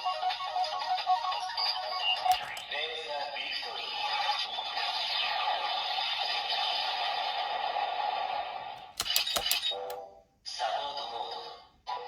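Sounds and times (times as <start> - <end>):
plastic button clicks: 2.3 - 2.7, 8.8 - 10.0.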